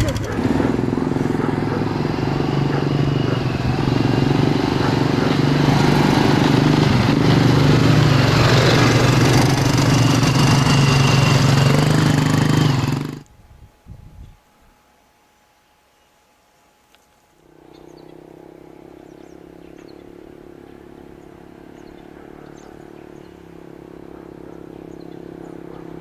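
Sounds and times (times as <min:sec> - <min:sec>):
atv engine running: 0:00.0 - 0:13.3, 0:17.4 - 0:26.0.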